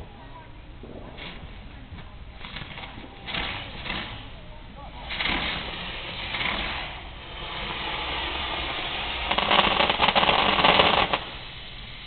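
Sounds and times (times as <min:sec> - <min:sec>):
fireworks crackling pops: 0:00.7 - 0:12.0.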